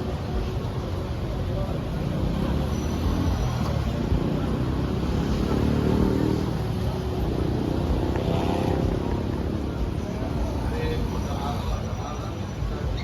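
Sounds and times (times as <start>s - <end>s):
road traffic: 0.0s - 13.0s
vehicle engine passing: 1.9s - 10.3s.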